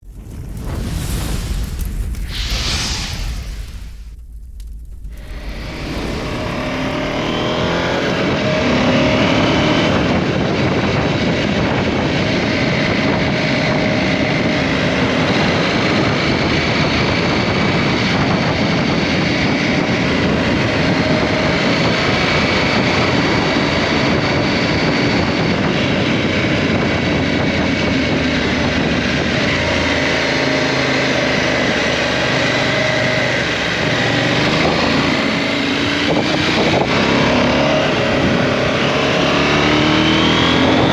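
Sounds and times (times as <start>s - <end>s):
riding wind noise: 0.0s - 9.3s.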